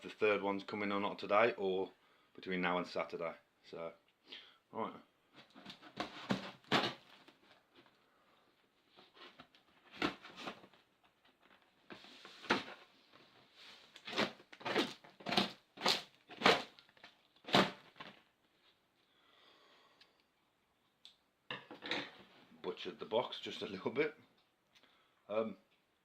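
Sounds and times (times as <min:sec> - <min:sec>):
cardboard rustling: 0:05.4 - 0:08.0, 0:08.7 - 0:18.8
cardboard box being torn open: 0:05.7 - 0:07.3, 0:14.0 - 0:18.2.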